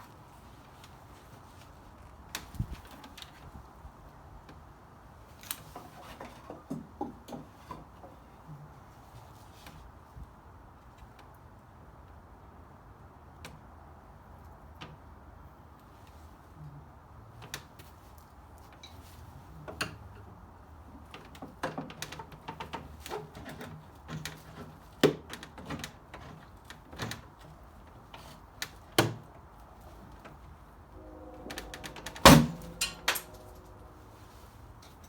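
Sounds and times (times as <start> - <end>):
loud knock with ringing: 31.4 - 33.8.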